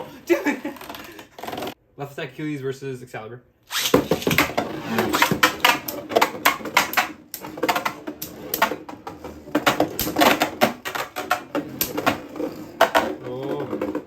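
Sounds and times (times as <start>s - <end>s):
plastic spinning tops clacking: 4.1s - 14.0s.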